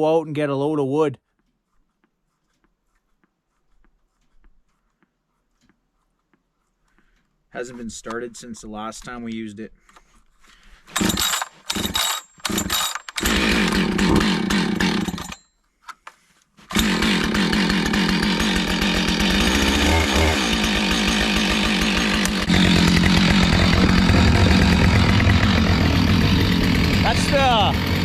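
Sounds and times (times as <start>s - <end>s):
chainsaw sputtering and running: 10.9s - 15.4s, 16.7s - 28.0s.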